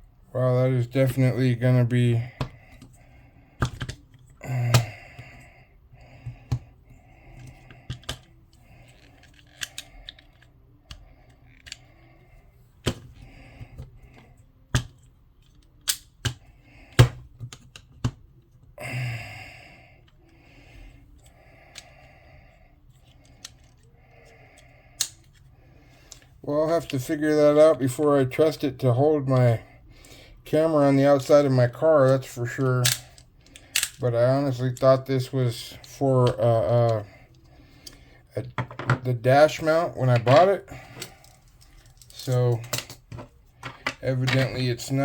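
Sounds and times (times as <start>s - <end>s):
hard plastic clicks and taps: 3.6s - 4.1s, 7.4s - 8.3s.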